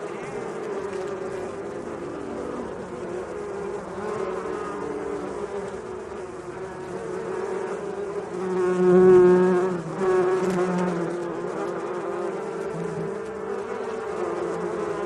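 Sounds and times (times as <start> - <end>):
bees buzzing: 0.0 - 15.0.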